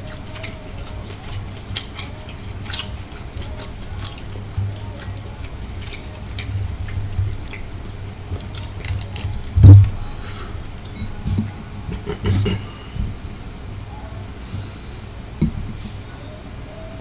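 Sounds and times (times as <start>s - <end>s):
wet chewing and mouth smacks: 0.0s - 11.0s
loud low thump: 9.6s - 10.0s.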